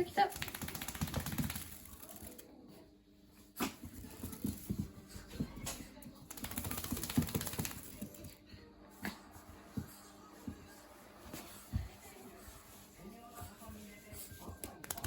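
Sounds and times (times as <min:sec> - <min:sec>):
puppy scratching on a towel: 0:09.0 - 0:15.0.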